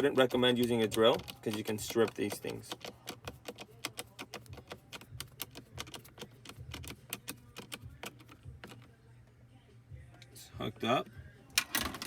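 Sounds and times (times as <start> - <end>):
hand ratchet clicking: 0.6 - 8.4.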